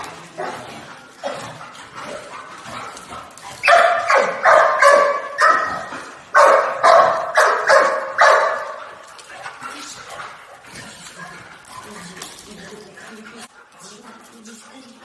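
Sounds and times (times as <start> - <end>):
dog barking excitedly: 2.3 - 9.0.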